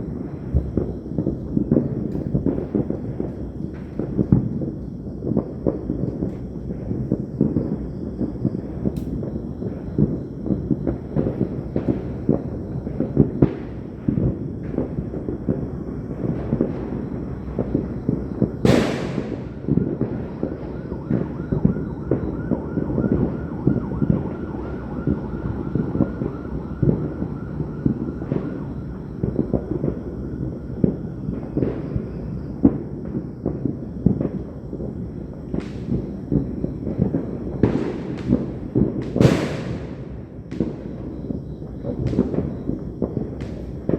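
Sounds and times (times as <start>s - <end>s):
fireworks popping and booming: 0.0s - 43.9s
sharp close bang: 18.6s - 19.6s.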